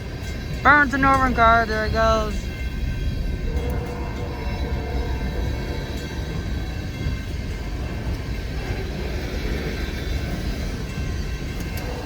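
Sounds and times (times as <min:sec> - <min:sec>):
freight train rumbling past: 0:00.0 - 0:12.0.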